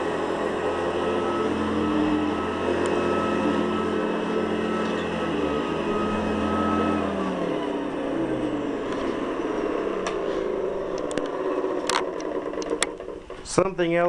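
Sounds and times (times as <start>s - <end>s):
vacuum cleaner running: 0.0s - 13.6s.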